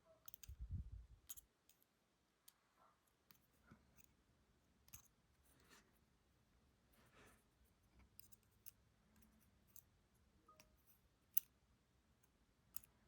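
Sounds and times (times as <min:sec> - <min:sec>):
small metal lock parts clicking: 0:00.2 - 0:00.6, 0:01.2 - 0:01.9, 0:04.8 - 0:05.1, 0:08.0 - 0:09.9, 0:10.5 - 0:11.6, 0:12.2 - 0:13.0.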